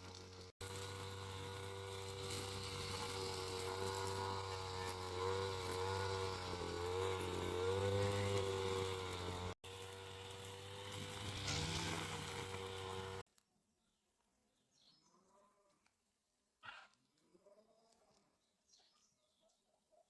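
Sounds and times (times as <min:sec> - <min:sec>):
small engine running: 0:00.0 - 0:13.2.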